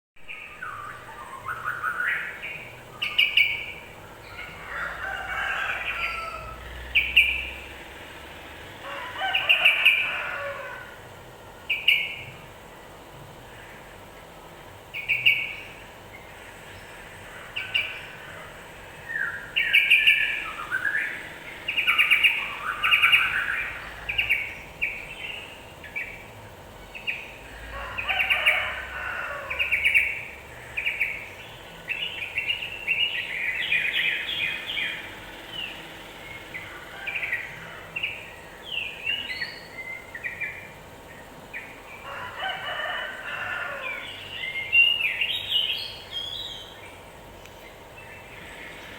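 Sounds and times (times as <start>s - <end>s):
bulbul bird song: 0.2s - 48.9s.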